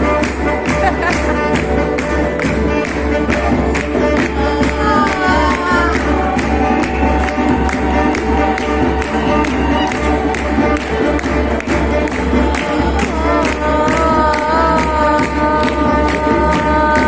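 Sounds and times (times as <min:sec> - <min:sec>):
music with a steady beat: 0:00.0 - 0:17.0
voices singing: 0:03.5 - 0:10.3, 0:11.8 - 0:17.0.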